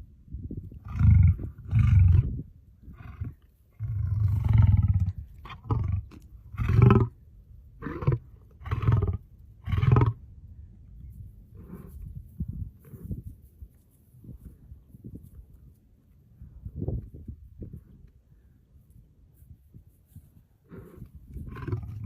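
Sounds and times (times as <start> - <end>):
lion roaring: 0.8 - 7.2, 7.8 - 10.2, 20.7 - 22.0.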